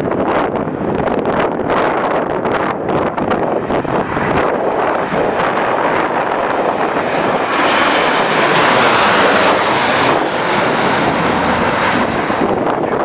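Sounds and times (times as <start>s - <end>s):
jet airliner passing: 0.0s - 13.0s
wind buffeting microphone: 0.0s - 13.0s.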